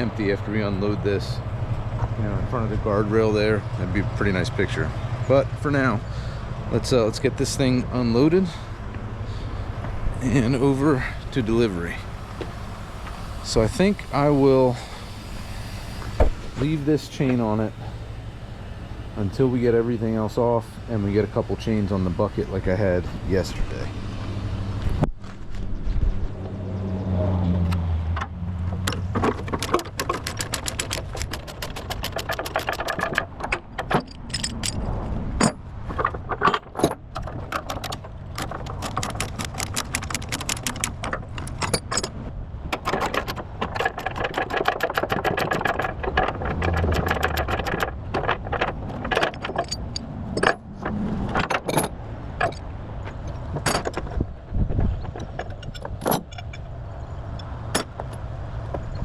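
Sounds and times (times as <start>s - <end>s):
engine running: 0.0s - 59.0s
steel chains clinking and rattling: 28.9s - 35.7s, 36.4s - 42.2s, 42.8s - 50.8s, 51.4s - 54.2s, 54.9s - 56.8s.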